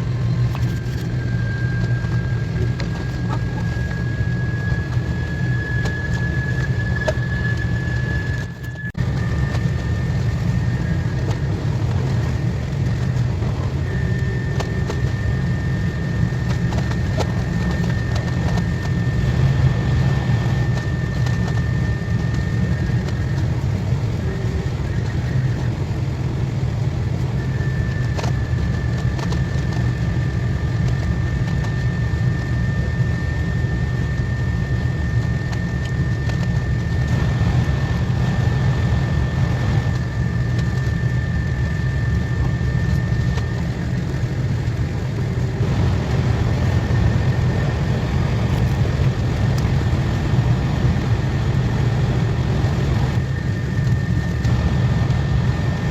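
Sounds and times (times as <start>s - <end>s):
high whine: 0.0s - 55.9s
train rumble inside carriage: 35.2s - 53.2s.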